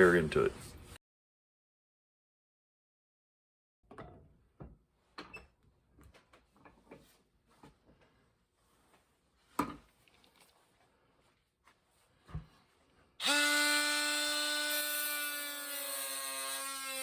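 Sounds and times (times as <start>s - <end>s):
objects knocking and clunking: 3.9s - 5.4s, 9.5s - 10.3s.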